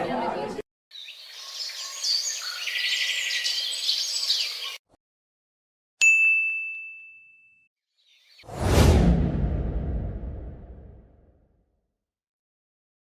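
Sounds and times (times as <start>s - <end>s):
birds chirping and singing: 0.9s - 4.8s
bright bell ding: 6.0s - 7.6s.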